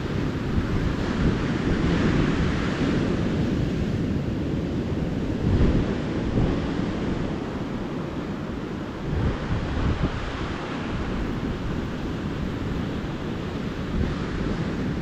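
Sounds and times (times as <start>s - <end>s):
ocean surf washing onto beach: 0.0s - 15.0s
wind buffeting microphone: 0.0s - 15.0s.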